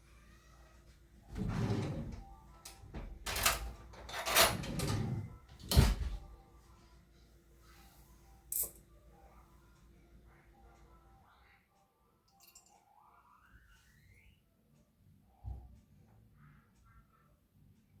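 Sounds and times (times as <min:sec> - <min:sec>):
kitchen items scraping: 0:01.3 - 0:02.2, 0:03.3 - 0:06.2.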